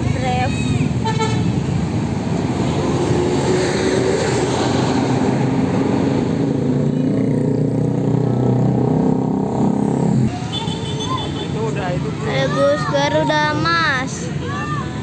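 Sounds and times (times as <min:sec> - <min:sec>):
road noise: 0:00.0 - 0:15.0.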